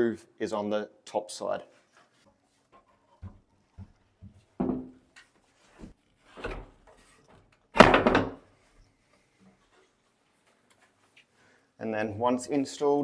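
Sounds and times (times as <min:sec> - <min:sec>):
wood clattering: 0:02.7 - 0:08.5
wooden knocks and thunks: 0:03.2 - 0:05.0, 0:07.8 - 0:08.4.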